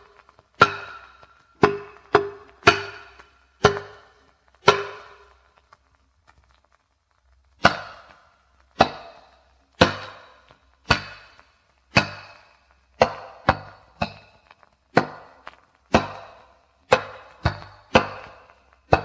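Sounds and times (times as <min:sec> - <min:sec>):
bone struck as percussion: 0:00.0 - 0:05.3.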